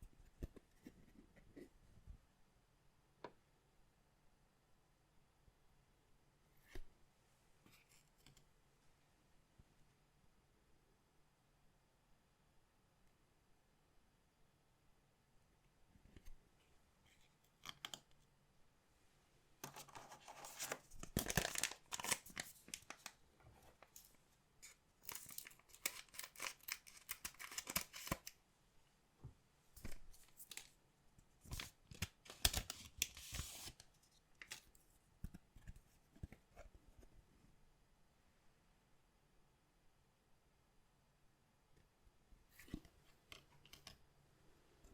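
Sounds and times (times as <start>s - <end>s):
card packs tearing and crinkling: 20.4s - 23.0s, 25.1s - 28.3s.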